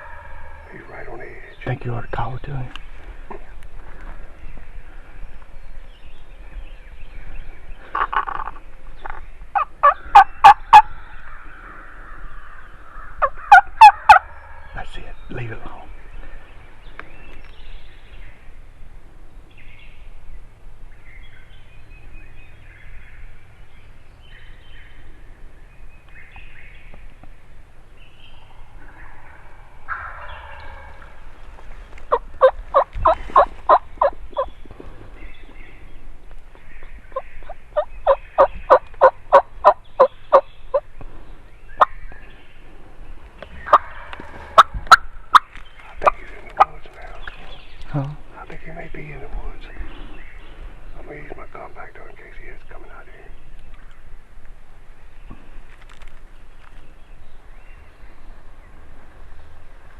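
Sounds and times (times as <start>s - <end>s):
turkey gobbling: 0.0s - 0.8s, 7.9s - 11.0s, 13.0s - 14.8s, 29.9s - 31.3s, 32.0s - 34.5s, 37.1s - 40.8s, 43.6s - 46.9s
turkey yelps: 8.0s - 10.9s, 13.0s - 14.7s, 29.9s - 31.1s, 32.1s - 34.5s, 37.1s - 40.8s, 43.7s - 46.7s.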